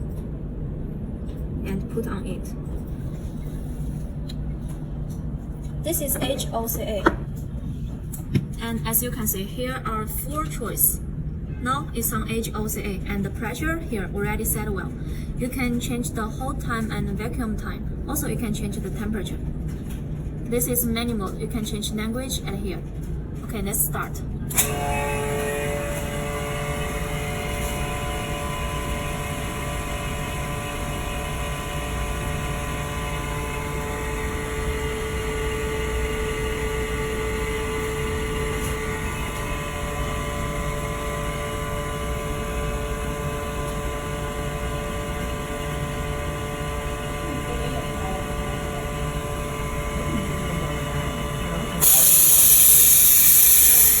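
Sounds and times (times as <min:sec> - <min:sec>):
pump drone with tones: 0:24.5 - 0:54.0
loud hiss of air: 0:51.8 - 0:54.0.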